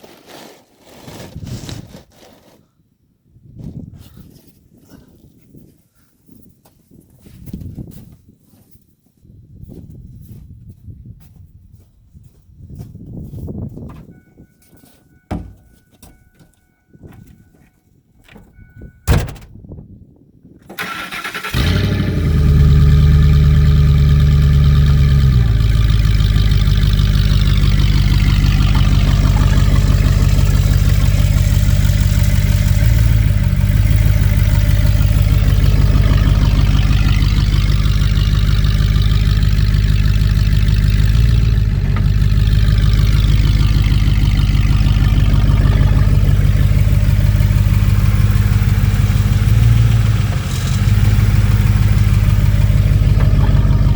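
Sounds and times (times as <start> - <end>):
truck engine cranking and idling: 15.2 - 17.5, 18.2 - 20.0, 20.6 - 53.9.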